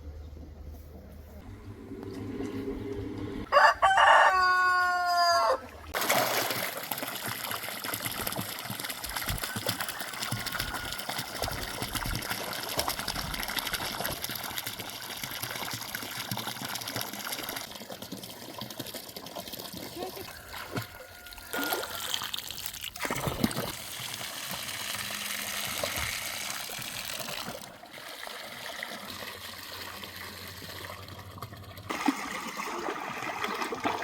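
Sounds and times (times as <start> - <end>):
rooster crowing: 3.4 - 5.7, 20.3 - 22.2
running water: 4.5 - 34.0.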